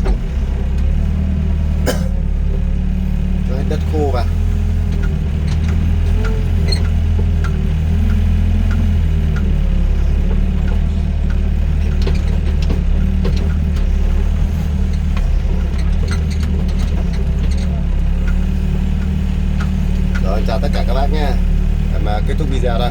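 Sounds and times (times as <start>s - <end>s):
excavator diesel engine running: 0.0s - 22.9s
light clicks and knocks: 4.9s - 21.0s.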